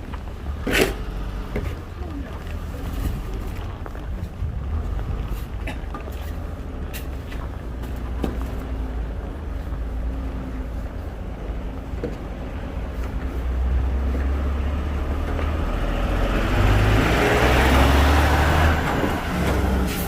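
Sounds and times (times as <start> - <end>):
vehicle passing by: 13.3 - 20.0.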